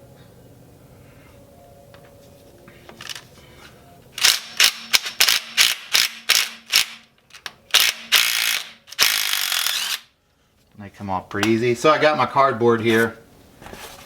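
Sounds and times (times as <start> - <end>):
ratchet wrench ratcheting: 4.2 - 10.1.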